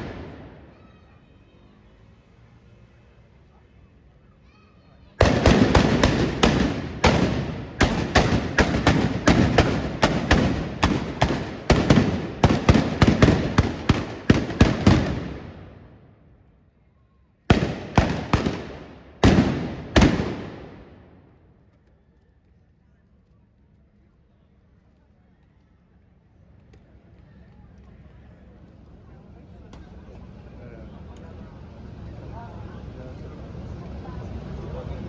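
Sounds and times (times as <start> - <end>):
blunderbuss gunshots: 0.0 - 0.7, 5.2 - 16.0, 17.5 - 21.2.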